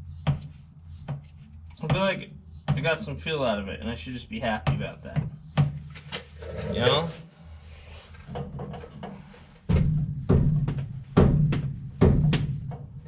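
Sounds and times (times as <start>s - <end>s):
hollow thumps on metal tank: 8.3s - 13.0s.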